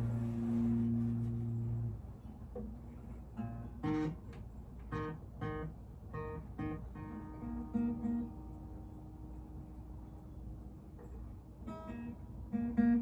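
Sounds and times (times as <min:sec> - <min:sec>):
acoustic guitar strumming chords: 0:00.0 - 0:02.0, 0:03.4 - 0:04.2, 0:04.9 - 0:09.9, 0:11.7 - 0:13.0.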